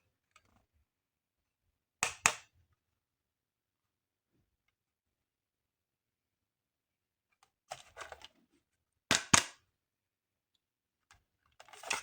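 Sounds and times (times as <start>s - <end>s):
sharp plastic snaps: 2.0s - 2.5s, 9.1s - 9.6s.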